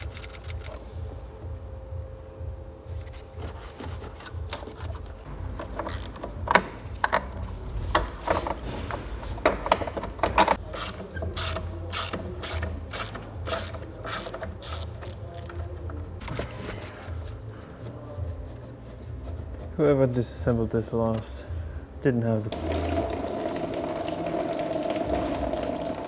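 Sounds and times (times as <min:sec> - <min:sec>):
ratchet wrench clicking: 0:00.0 - 0:00.8, 0:10.6 - 0:15.6.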